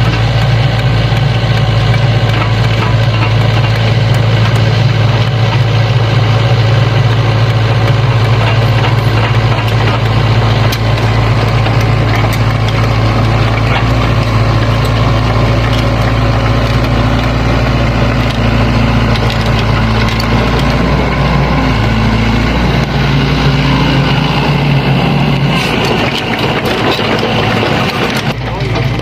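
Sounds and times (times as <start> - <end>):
clicks and knocks: 0.0 - 4.8, 8.2 - 21.1, 25.5 - 29.0
excavator diesel engine working: 0.0 - 29.0.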